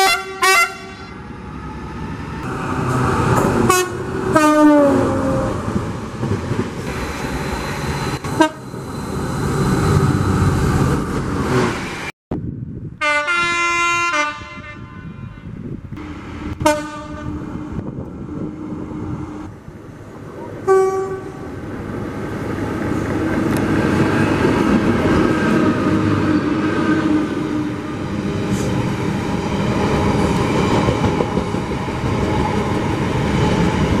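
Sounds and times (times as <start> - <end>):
train horn toot: 0.0 - 1.1, 3.7 - 5.6, 8.3 - 8.7, 13.0 - 15.8, 16.6 - 17.7, 20.7 - 21.5
train passing with wheels rumbling: 0.0 - 12.1, 15.8 - 34.0.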